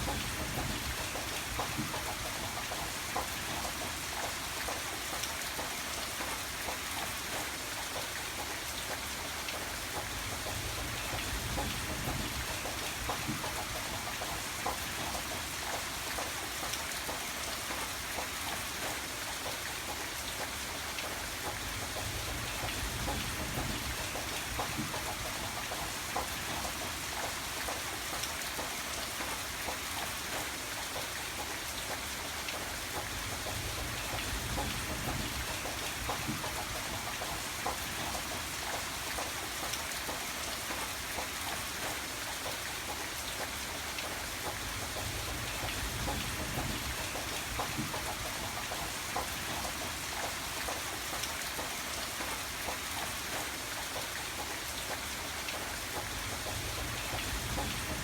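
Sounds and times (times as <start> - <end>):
rain pattering on a surface: 0.0 - 58.0.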